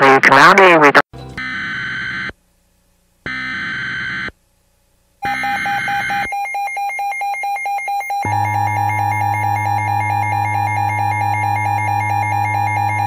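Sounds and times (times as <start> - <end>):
buzzing digital data tone: 8.2 - 13.0
electronic music with pulsing tone: 8.2 - 13.0
deep bass: 8.3 - 13.0.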